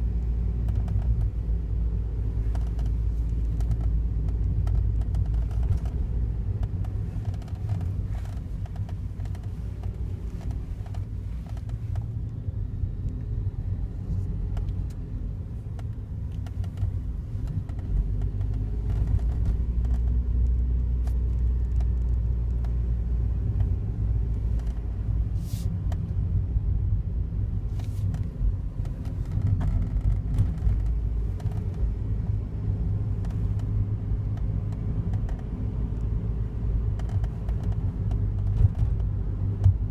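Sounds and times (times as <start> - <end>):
car engine rumbling: 0.0 - 39.9
faint clicks and ticks: 2.4 - 12.4, 15.7 - 22.8.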